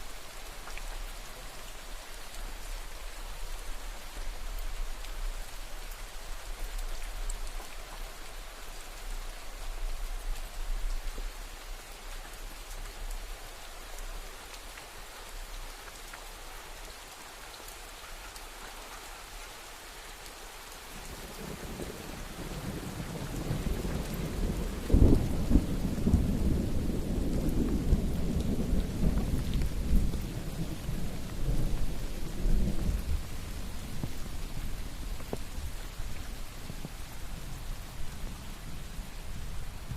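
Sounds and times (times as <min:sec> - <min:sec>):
rain falling: 0:00.0 - 0:39.9
thunder rumbling and cracking: 0:21.4 - 0:35.8.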